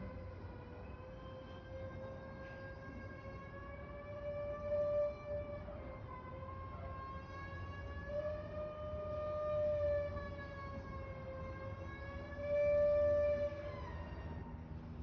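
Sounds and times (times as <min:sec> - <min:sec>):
siren-like wailing tone: 0:00.0 - 0:14.6.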